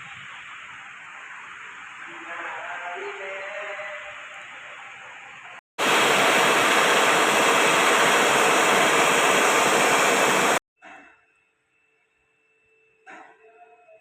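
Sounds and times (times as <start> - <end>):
loud steady hiss: 0.0 - 10.6.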